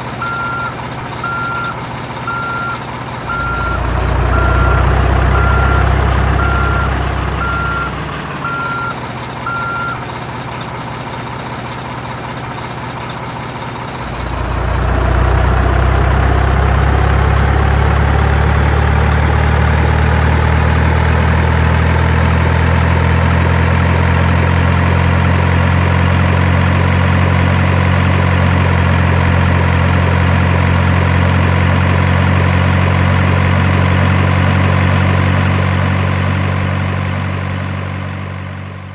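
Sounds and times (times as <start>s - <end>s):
diesel truck engine: 0.0s - 38.9s
reversing beeper: 0.2s - 10.0s, 14.0s - 21.6s.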